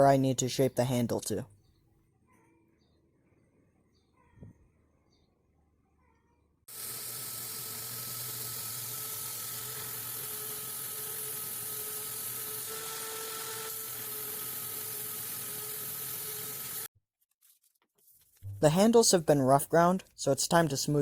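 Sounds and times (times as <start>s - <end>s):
power grinder grinding wood: 6.7s - 16.9s.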